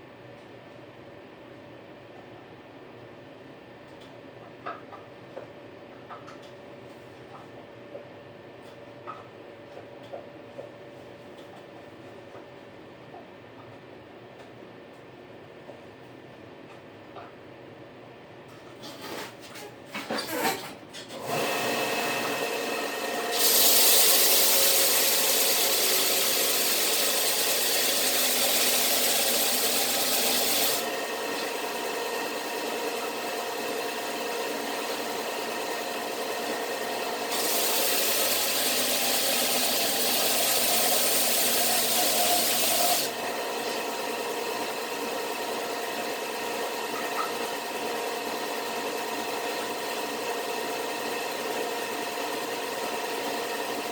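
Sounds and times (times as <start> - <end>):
power sander running: 21.3 - 53.9
sander rasping on wood: 23.3 - 31.6, 37.3 - 43.7.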